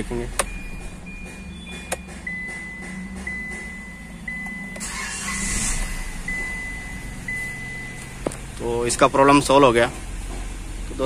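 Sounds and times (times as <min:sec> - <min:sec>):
dashboard warning chime beeping: 0:00.0 - 0:09.5
engine starter cranking: 0:04.3 - 0:06.4.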